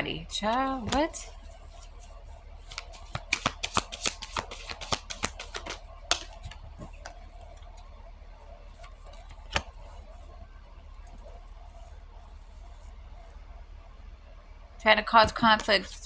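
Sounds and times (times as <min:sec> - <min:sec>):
cards being shuffled: 0:00.4 - 0:07.8, 0:08.7 - 0:12.8
card tap: 0:00.9 - 0:01.2, 0:02.7 - 0:07.2.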